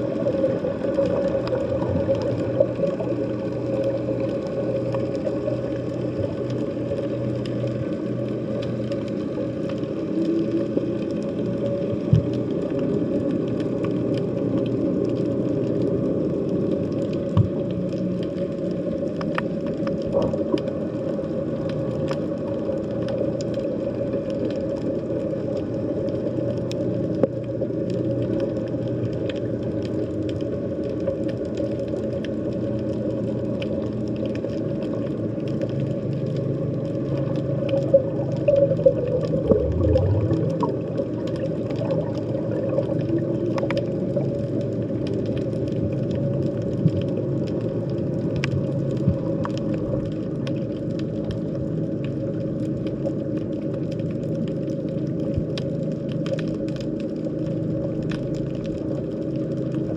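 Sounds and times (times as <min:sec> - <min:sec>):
underwater droning hum: 0:00.0 - 0:59.9
faint clicks and pops: 0:33.4 - 0:51.4
low rumble: 0:35.2 - 0:51.0.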